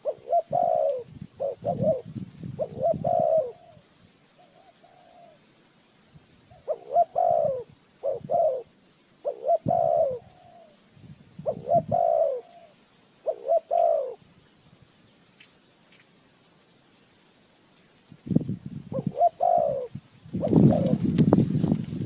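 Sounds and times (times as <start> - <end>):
dove cooing: 0.0 - 5.5, 6.5 - 10.8, 11.4 - 14.2, 18.9 - 22.0.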